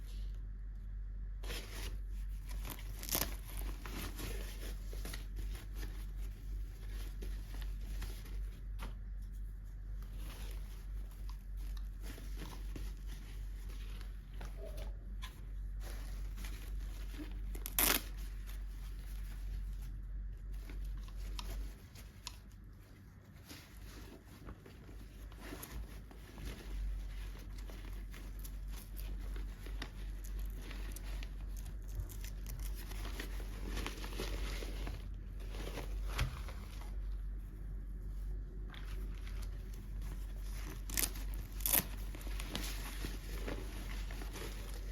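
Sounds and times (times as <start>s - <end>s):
packaging torn and crinkled: 17.6s - 18.1s, 40.6s - 44.8s.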